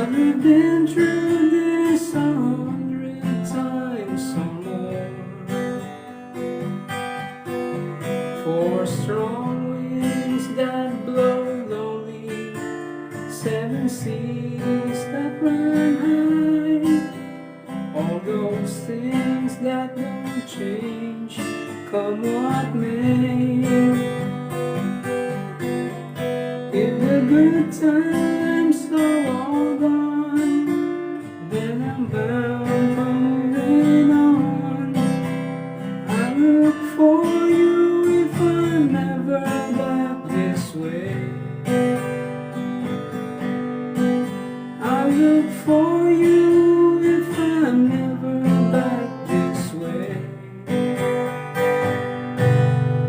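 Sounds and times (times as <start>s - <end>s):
acoustic guitar strumming: 0.0s - 53.0s.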